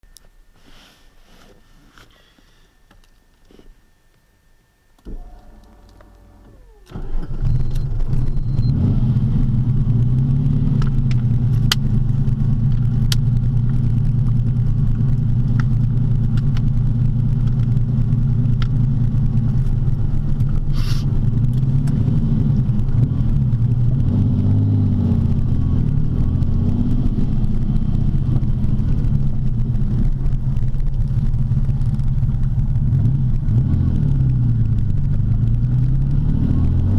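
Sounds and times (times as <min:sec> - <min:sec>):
engine starter cranking: 0:05.0 - 0:08.6
car engine running: 0:05.0 - 0:36.9.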